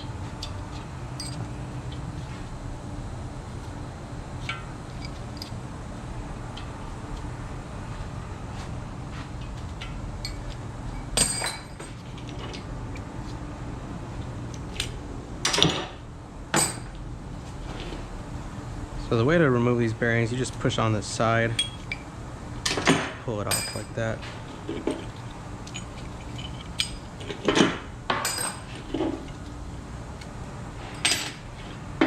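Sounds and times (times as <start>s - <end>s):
steady shop hum: 0.0s - 32.0s
metal parts clicking: 1.2s - 1.4s, 24.5s - 29.4s
ringing metal clanks: 1.2s - 1.5s, 10.2s - 12.0s, 21.5s - 22.1s, 23.4s - 24.1s, 24.7s - 28.7s.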